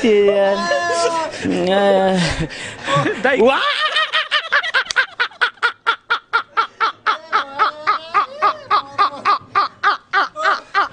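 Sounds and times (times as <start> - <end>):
man laughing rapidly: 2.9 - 10.9.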